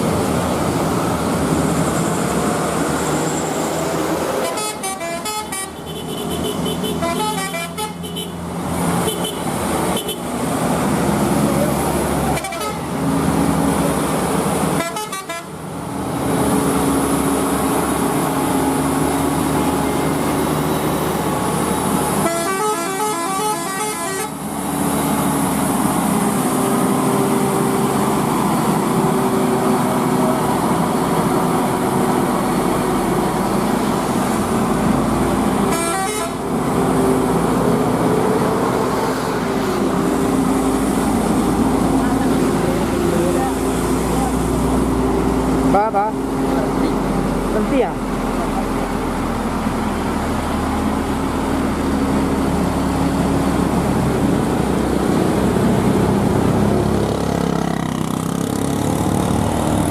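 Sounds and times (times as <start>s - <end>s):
heavy truck engine under load: 0.0s - 59.9s
truck horn: 4.4s - 10.3s, 12.2s - 13.0s, 14.7s - 15.6s, 22.1s - 24.5s, 35.6s - 36.6s.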